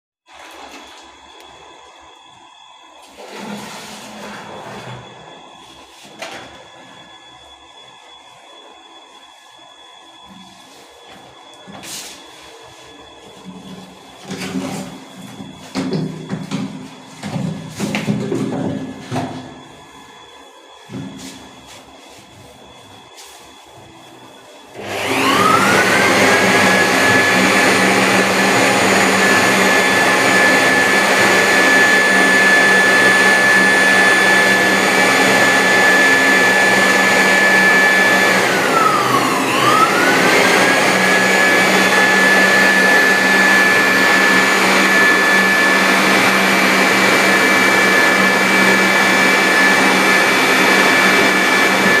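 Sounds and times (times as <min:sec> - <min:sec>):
high-speed electric motor whine: 0:24.1 - 0:52.0.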